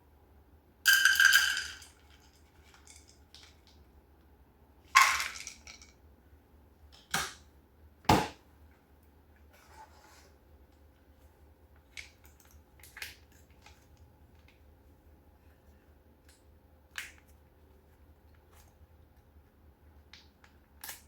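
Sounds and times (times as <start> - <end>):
scrape: 9.5 - 10.4.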